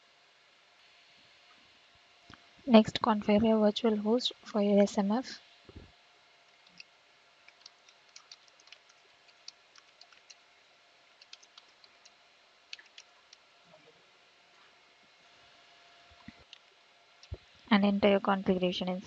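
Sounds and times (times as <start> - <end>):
computer keyboard typing: 6.6 - 6.9, 7.5 - 10.4, 11.2 - 13.4.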